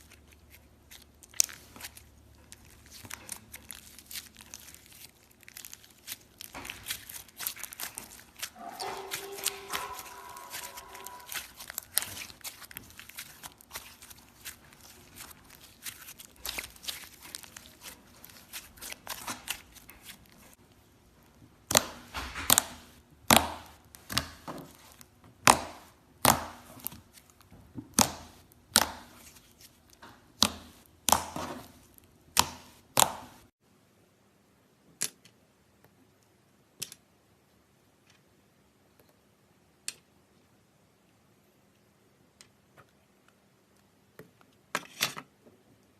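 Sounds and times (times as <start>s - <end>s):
slime crackling and popping: 0.0s - 20.9s, 21.6s - 33.5s.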